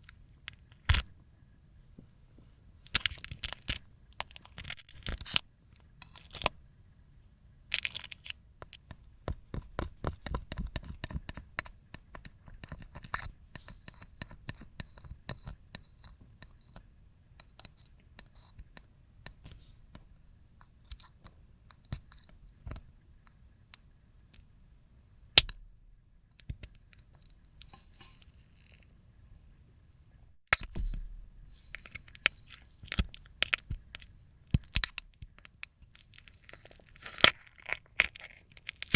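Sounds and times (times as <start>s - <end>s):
dried slime crackling and tearing: 35.9s - 38.9s
loud slime crack: 37.0s - 38.9s.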